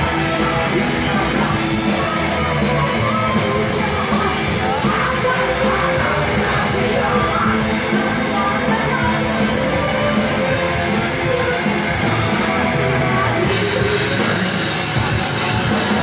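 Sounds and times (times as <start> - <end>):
heavy rock music: 0.0 - 16.0
person singing: 0.0 - 16.0.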